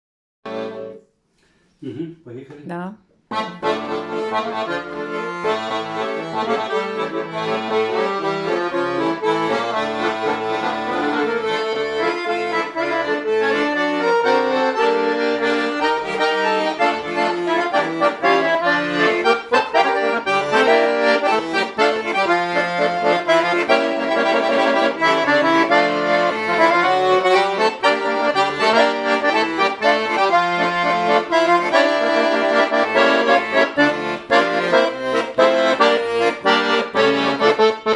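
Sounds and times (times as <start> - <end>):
accordion tune: 0.5 - 1.6, 2.7 - 37.9.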